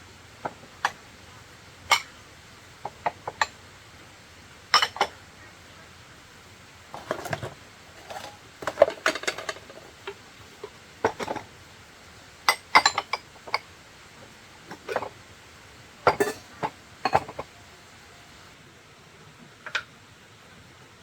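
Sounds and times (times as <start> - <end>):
household items clinking and knocking: 0.4 - 1.0, 6.9 - 11.5, 12.5 - 13.7, 14.7 - 15.2, 16.0 - 17.6.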